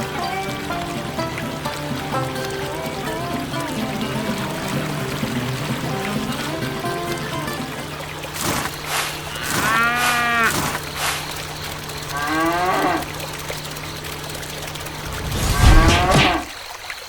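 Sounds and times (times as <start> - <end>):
cow mooing: 9.2 - 10.8, 12.1 - 13.1
steady low hum: 13.0 - 16.5.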